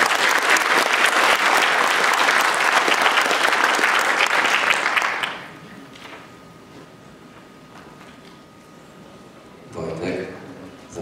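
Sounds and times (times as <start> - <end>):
audience applauding: 0.0 - 5.6.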